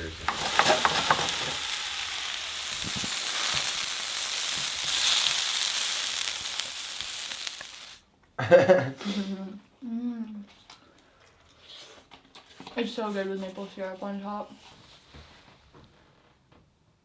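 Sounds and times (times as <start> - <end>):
food sizzling in a frying pan: 0.0 - 8.0.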